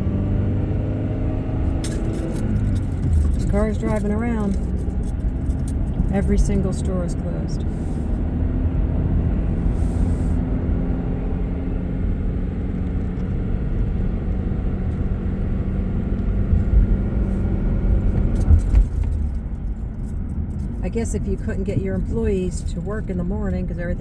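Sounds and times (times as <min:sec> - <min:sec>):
car engine and tyres rumbling: 0:00.0 - 0:24.0
low bumps: 0:01.2 - 0:10.8, 0:12.8 - 0:24.0.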